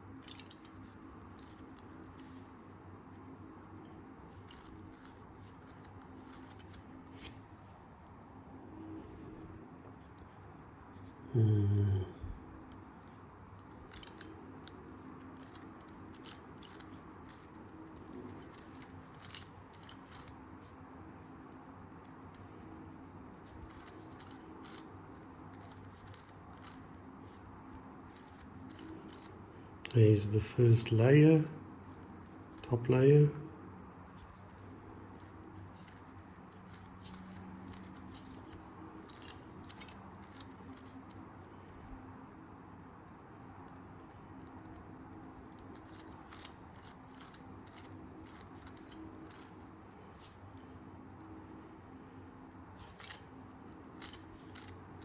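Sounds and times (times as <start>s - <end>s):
low steady hum: 0.0s - 55.0s
puzzle cube clicking: 4.3s - 7.2s, 13.6s - 20.5s, 22.6s - 30.0s, 35.1s - 41.2s, 43.7s - 49.6s, 52.2s - 55.0s.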